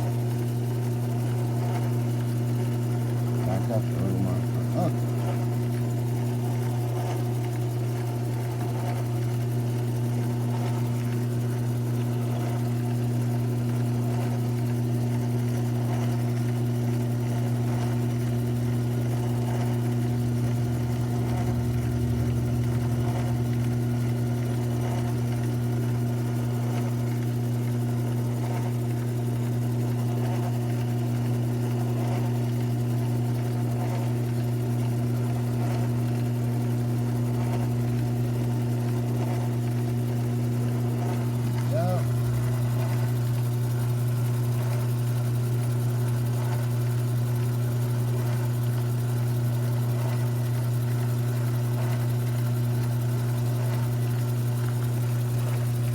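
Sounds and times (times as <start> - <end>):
small electric motor humming: 3.3 - 5.8, 17.0 - 28.9, 36.4 - 43.8.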